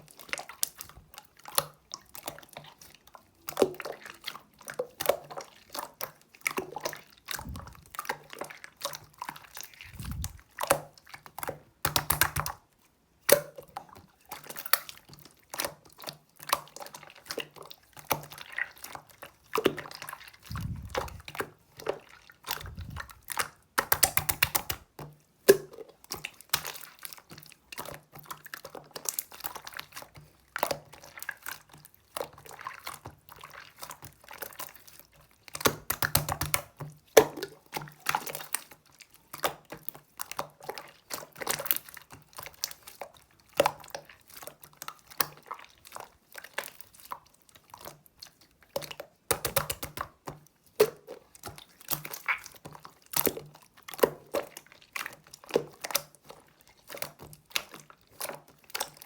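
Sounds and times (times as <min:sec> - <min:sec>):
crinkling and crackling: 0:07.3 - 0:07.9, 0:09.7 - 0:10.6, 0:20.4 - 0:21.9, 0:22.5 - 0:23.5.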